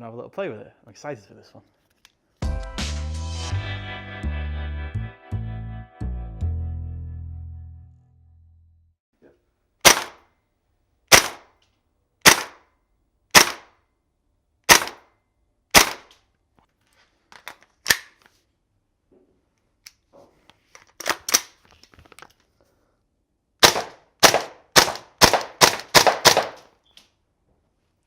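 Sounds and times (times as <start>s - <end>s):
airsoft rifle shots: 9.8s - 10.3s, 11.1s - 11.6s, 12.2s - 12.7s, 13.3s - 13.8s, 14.7s - 15.1s, 15.7s - 16.1s, 23.6s - 26.7s
rifle clicks: 17.4s - 18.3s.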